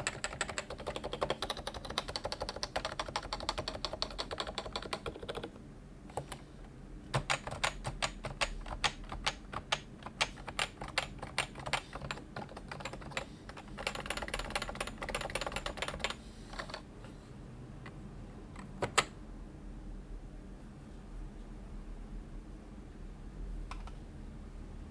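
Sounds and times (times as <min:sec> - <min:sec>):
keyboard typing: 0:00.0 - 0:05.5, 0:07.1 - 0:16.9.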